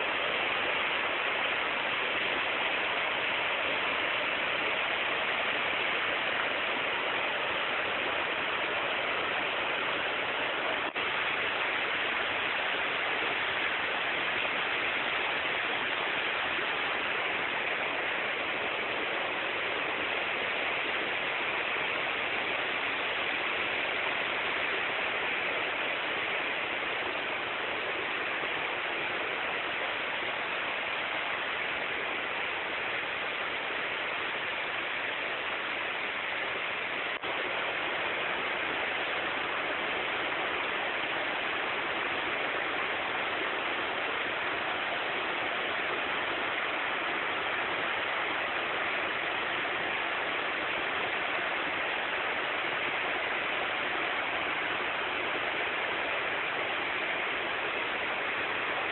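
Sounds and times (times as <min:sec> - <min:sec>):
waterfall rushing: 0:00.0 - 0:58.9.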